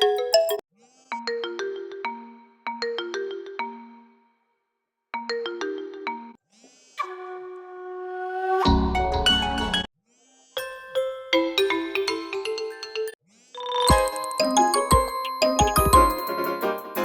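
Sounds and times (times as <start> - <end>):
phone ringtone melody: 13.6 - 17.0.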